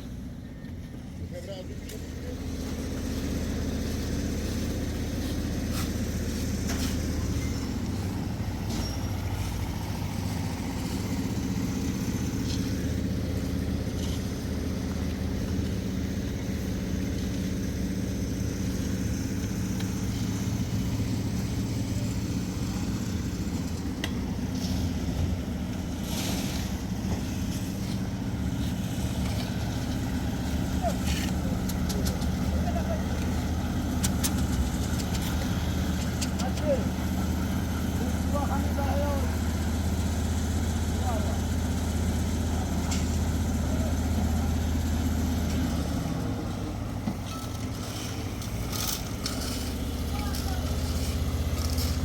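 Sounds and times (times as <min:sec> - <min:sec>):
engine running steadily: 0:00.0 - 0:52.0
scattered clicks and knocks: 0:34.0 - 0:36.7.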